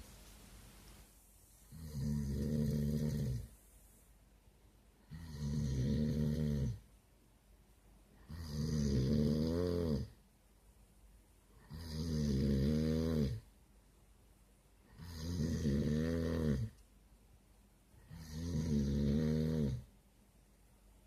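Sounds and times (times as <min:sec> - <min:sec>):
quiet breaths: 0:00.0 - 0:21.0
man snoring loudly: 0:01.7 - 0:03.5, 0:05.1 - 0:06.8, 0:08.3 - 0:10.1, 0:11.7 - 0:13.4, 0:15.0 - 0:16.7, 0:18.1 - 0:19.8.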